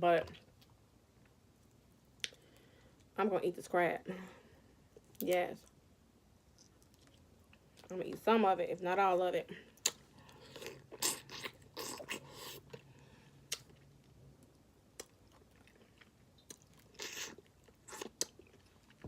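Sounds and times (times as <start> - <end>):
chewing: 6.5 - 7.9, 13.5 - 19.0.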